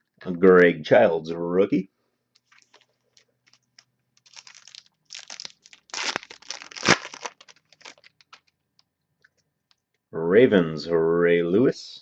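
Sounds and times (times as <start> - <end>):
foil wrapper crinkling and tearing: 2.4 - 8.5.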